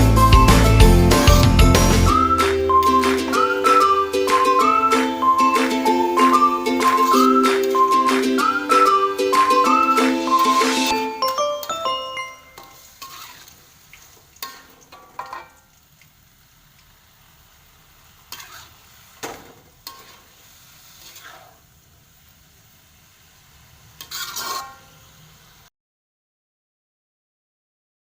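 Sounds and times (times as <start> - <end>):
faint sizzle: 2.1 - 25.7
spatula scraping frying pan: 12.6 - 13.6, 18.3 - 21.6, 24.0 - 24.9.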